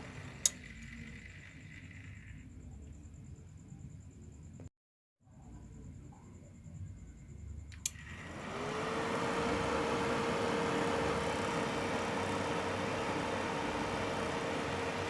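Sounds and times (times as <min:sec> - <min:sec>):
cooling fan whirring: 0:00.0 - 0:03.4, 0:07.5 - 0:15.0.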